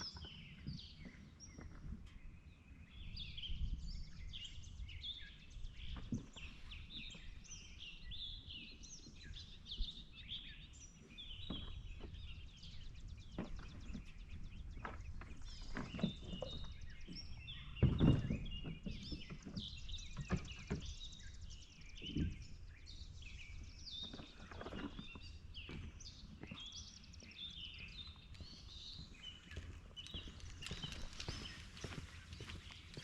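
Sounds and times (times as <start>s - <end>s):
birds chirping: 0.0s - 33.0s.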